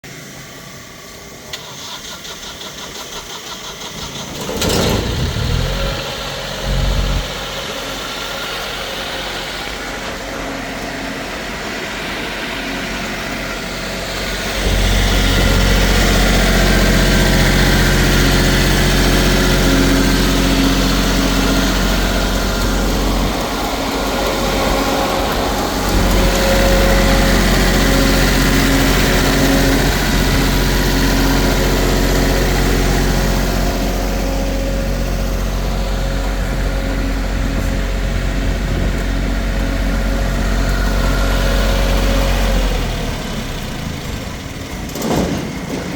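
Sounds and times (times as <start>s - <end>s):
diesel generator engine running: 0.1s - 45.9s.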